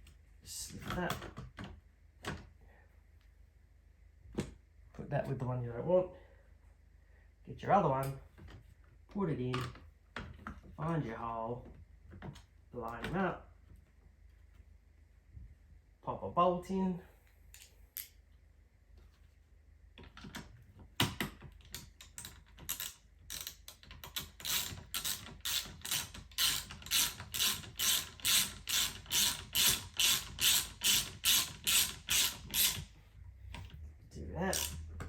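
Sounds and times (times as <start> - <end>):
ratchet wrench clicking: 22.7 - 32.9, 34.5 - 34.9.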